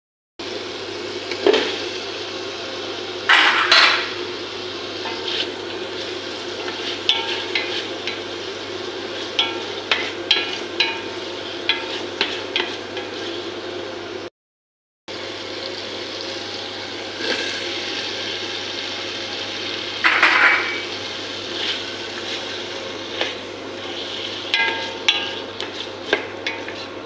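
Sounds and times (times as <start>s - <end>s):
metal utensil scraping pot: 6.6s - 8.2s, 9.2s - 13.4s, 21.5s - 27.0s.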